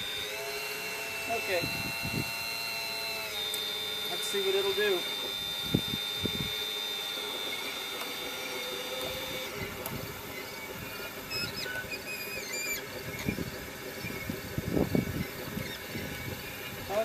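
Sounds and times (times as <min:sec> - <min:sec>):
high motor whine: 0:00.0 - 0:17.0
short high squeaks: 0:07.5 - 0:16.7.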